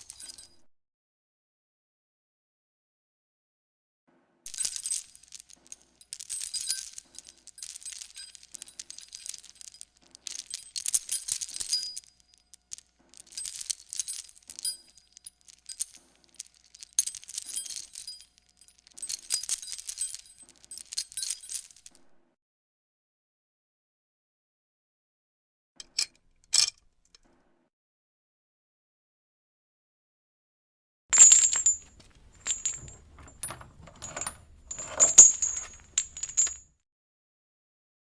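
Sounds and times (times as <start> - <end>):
metal chain rattling: 0.0 - 0.6, 4.5 - 21.9, 31.2 - 36.7.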